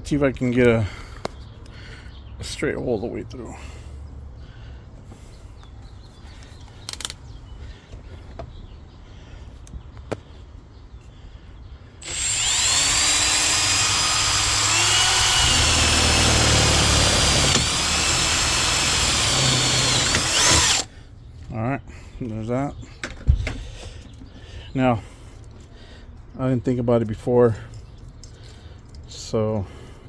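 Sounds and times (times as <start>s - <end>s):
power drill whining through plastic: 12.0s - 20.9s.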